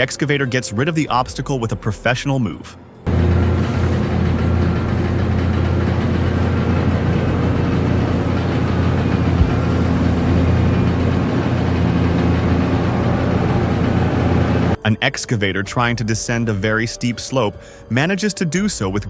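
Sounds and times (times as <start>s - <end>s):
excavator diesel engine running: 3.1s - 14.8s.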